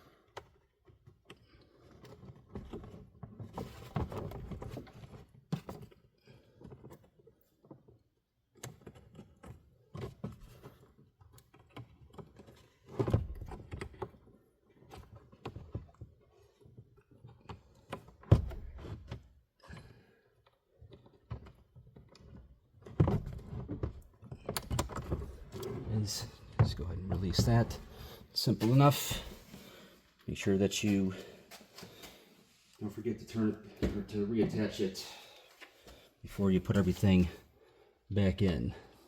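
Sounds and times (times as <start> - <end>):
plastic glove box clicks and rattles: 20.9 - 25.7.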